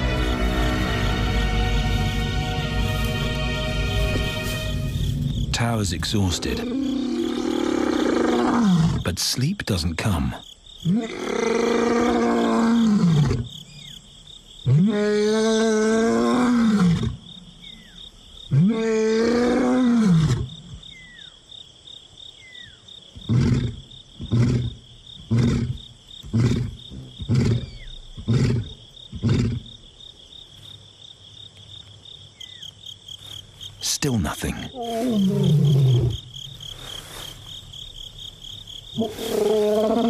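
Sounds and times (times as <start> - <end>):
cricket trill: 0.0 - 40.0
lion roaring: 6.4 - 9.1, 10.9 - 13.5, 14.7 - 17.2, 23.2 - 29.7, 34.7 - 36.4, 39.0 - 40.0.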